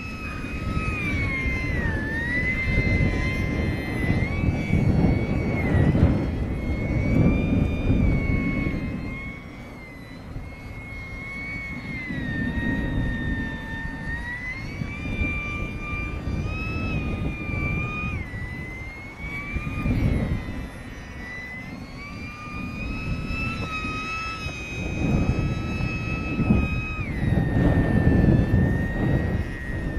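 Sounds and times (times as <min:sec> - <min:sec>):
model airplane motor whining: 0:00.0 - 0:29.9
wind buffeting microphone: 0:00.0 - 0:29.9.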